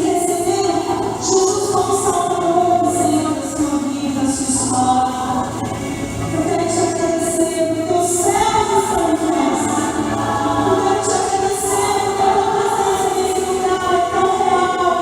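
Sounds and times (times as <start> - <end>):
choir singing: 5.4 - 15.0.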